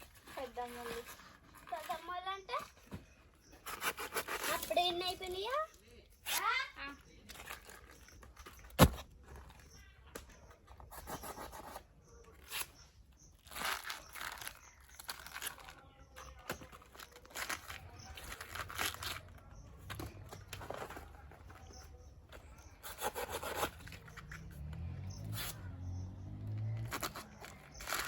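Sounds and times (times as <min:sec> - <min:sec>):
tearing and crinkling of flower: 0:12.3 - 0:21.9.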